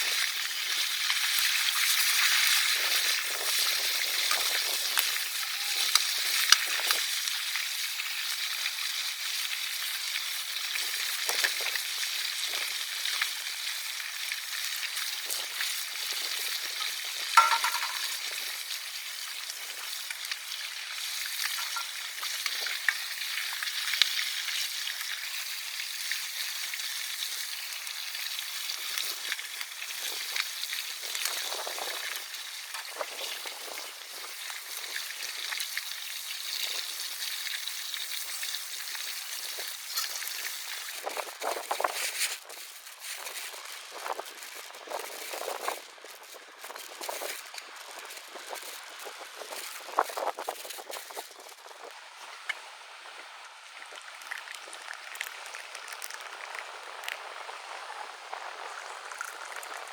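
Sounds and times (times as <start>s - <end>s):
fish sizzling in hot oil: 0.0s - 59.9s
sharp knock with ring: 17.4s - 18.1s.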